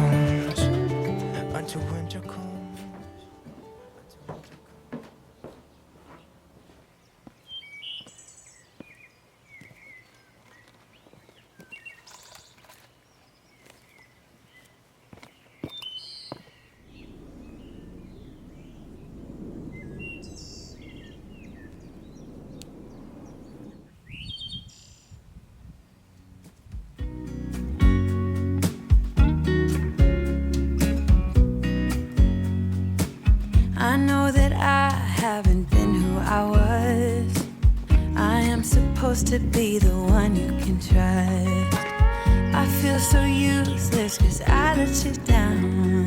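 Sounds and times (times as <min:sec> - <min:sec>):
small birds chirping: 0:05.2 - 0:26.4
low rushing noise: 0:16.8 - 0:24.2.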